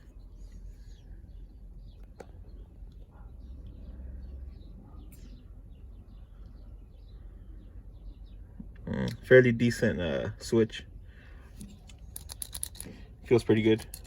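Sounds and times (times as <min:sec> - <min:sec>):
faint bird chirps: 0:00.0 - 0:09.3.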